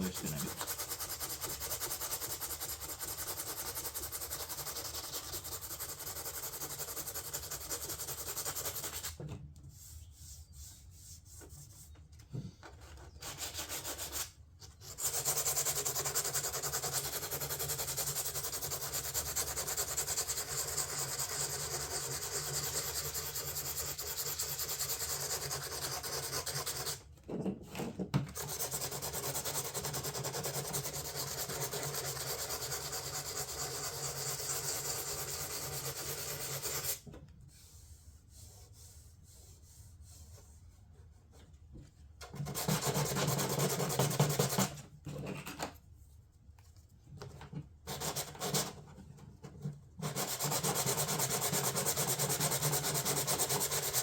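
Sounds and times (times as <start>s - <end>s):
sandpaper sanding a panel: 0.0s - 9.2s, 13.2s - 27.0s, 28.4s - 37.0s, 42.3s - 44.7s, 47.9s - 48.8s, 50.0s - 54.0s.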